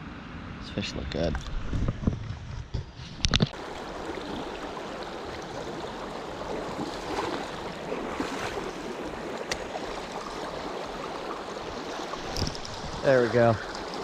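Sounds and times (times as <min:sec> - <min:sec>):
creek water rushing: 0:03.6 - 0:14.0.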